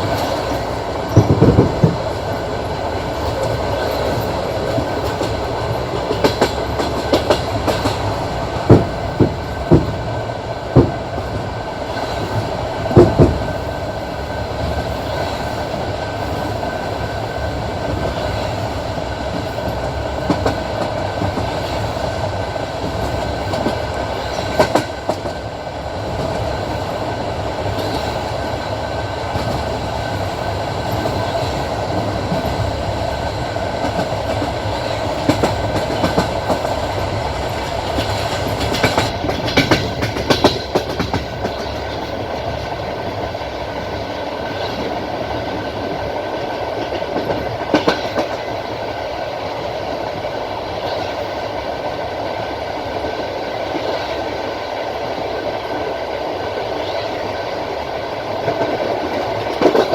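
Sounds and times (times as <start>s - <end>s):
wheels clacking over rail joints: 0.0s - 10.1s, 22.8s - 25.4s, 30.8s - 43.3s, 44.4s - 48.5s, 58.4s - 59.9s
train wheels rumbling on rails: 0.0s - 59.9s.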